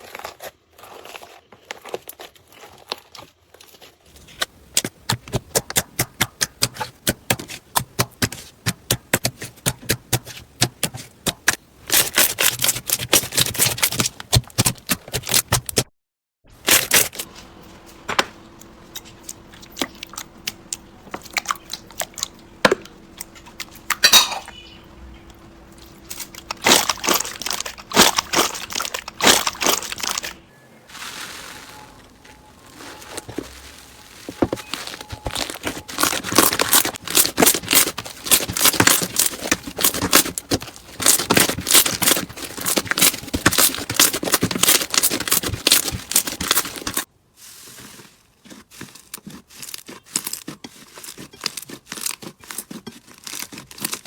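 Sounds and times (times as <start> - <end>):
slime crackling and popping: 26.1 - 47.1, 48.5 - 54.0.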